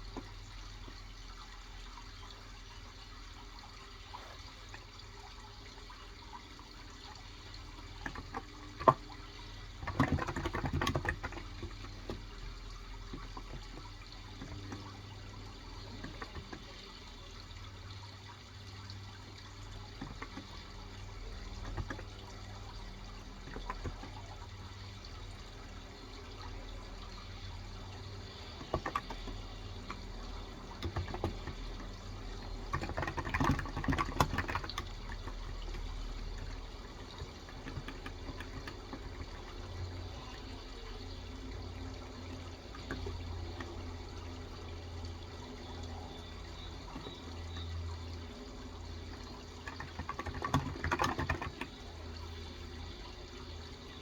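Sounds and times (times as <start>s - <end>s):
running water: 0.0s - 54.0s
keyboard typing: 9.7s - 12.4s, 15.7s - 16.9s, 28.2s - 40.5s, 49.0s - 52.4s.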